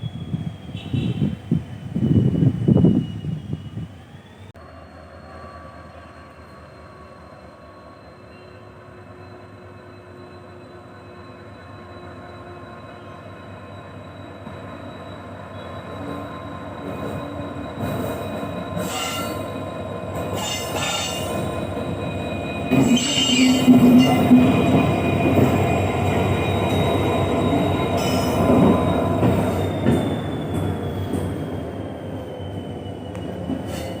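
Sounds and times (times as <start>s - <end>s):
high-pitched wheel squeal: 0.0s - 34.0s
train running noise: 0.0s - 34.0s.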